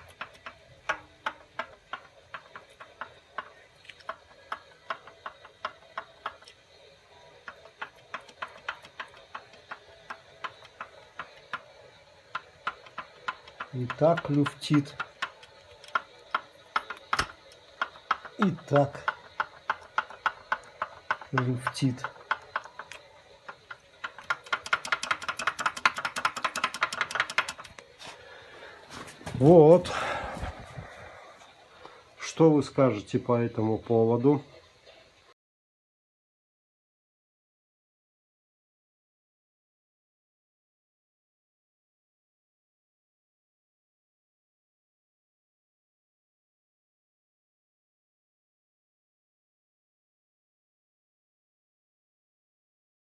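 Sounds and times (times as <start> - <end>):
sharp metallic clicks: 0.0 - 6.6, 7.4 - 27.8.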